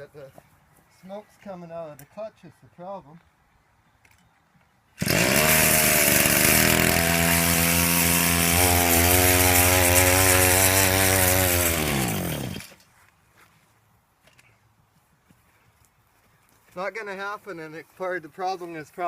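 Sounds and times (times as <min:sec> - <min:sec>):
two-stroke engine revving high: 0:05.0 - 0:12.7.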